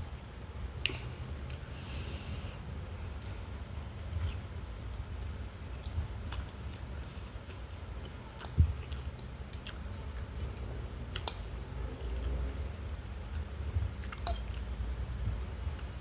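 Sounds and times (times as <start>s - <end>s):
chewing and wet mouth sounds: 3.2s - 3.4s, 5.2s - 14.9s.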